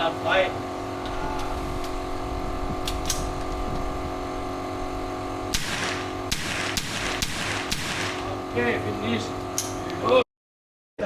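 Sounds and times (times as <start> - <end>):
rifle shots with echo: 5.5 - 8.4.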